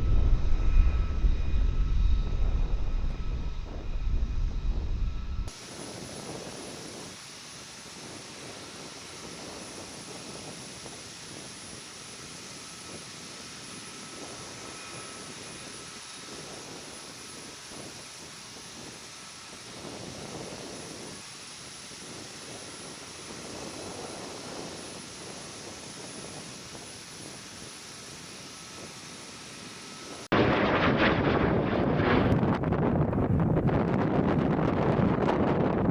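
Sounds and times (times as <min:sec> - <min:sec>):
distant jet aircraft rushing: 0:00.0 - 0:07.1
faint high whine: 0:00.0 - 0:32.3.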